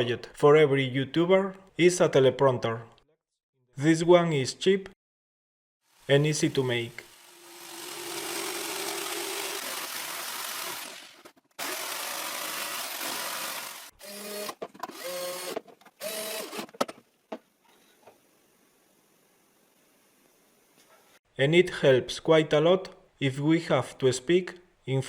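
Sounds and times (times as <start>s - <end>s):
small power tool running: 7.0s - 16.7s.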